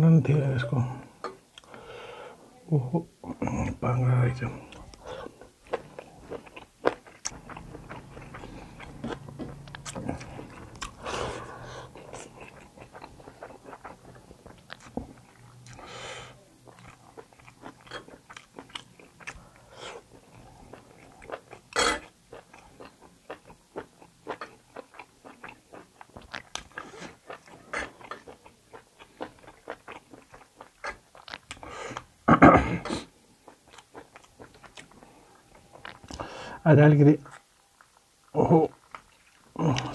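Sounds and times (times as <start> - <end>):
chewing and biting meat: 4.7 - 15.9, 16.6 - 32.1.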